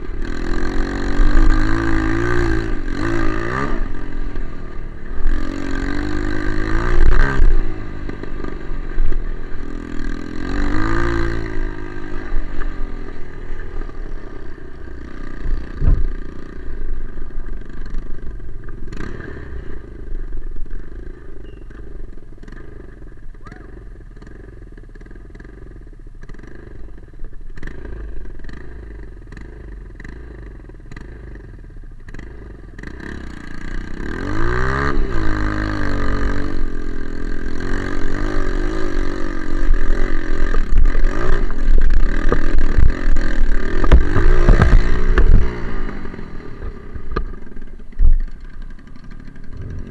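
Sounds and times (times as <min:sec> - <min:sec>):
motorcycle engine revving: 0:00.0 - 0:49.9
short engine knocks: 0:15.7 - 0:16.2, 0:43.8 - 0:45.5.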